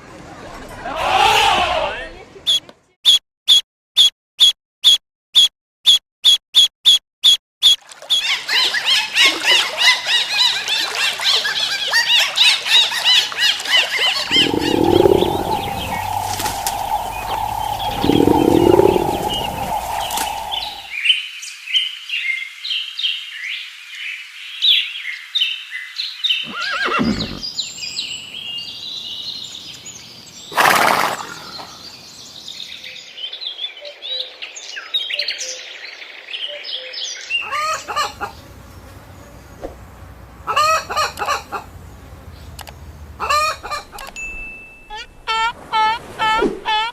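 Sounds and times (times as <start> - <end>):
bird-like chirping: 14.2 - 20.9
lower animal calls: 14.2 - 20.9
steady tone: 14.3 - 20.9.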